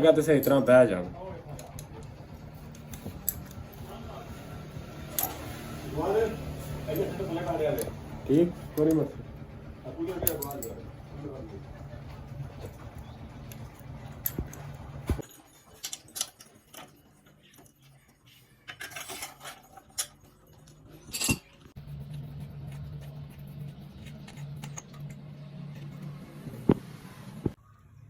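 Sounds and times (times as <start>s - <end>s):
steady low hum: 0.0s - 15.3s, 21.7s - 27.6s
metal tools clinking and rattling: 0.1s - 4.1s, 6.8s - 8.0s, 10.0s - 11.0s, 12.1s - 21.8s.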